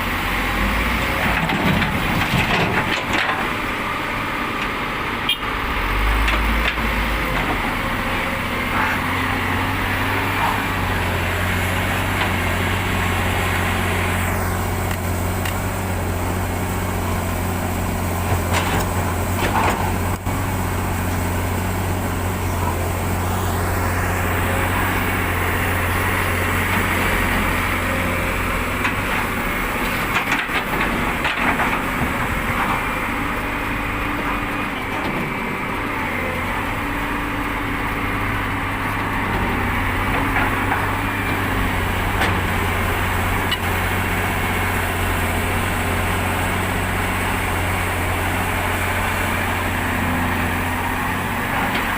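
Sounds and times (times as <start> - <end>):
diesel engines humming: 0.0 - 51.9
knocks and clatters: 1.2 - 3.6.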